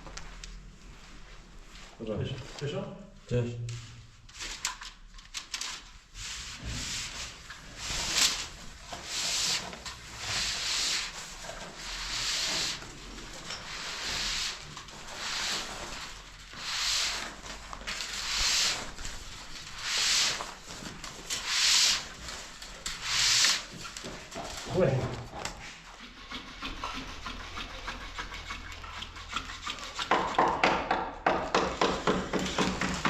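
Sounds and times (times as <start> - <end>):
abrasive rubbing strokes: 13.6 - 23.8.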